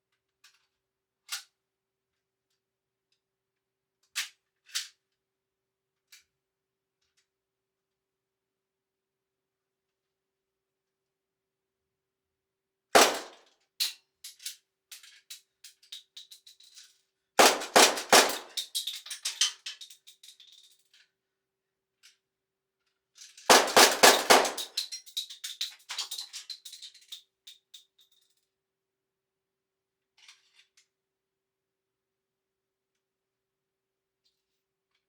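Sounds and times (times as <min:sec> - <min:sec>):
handgun shots: 0:13.0 - 0:13.4, 0:17.4 - 0:18.5, 0:23.5 - 0:24.7
brass casings clinking on floor: 0:23.5 - 0:25.2.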